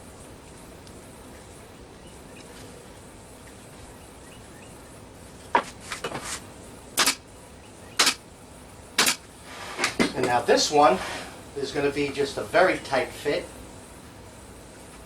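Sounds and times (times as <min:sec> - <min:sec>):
wood knocking on wood: 0:05.5 - 0:06.3.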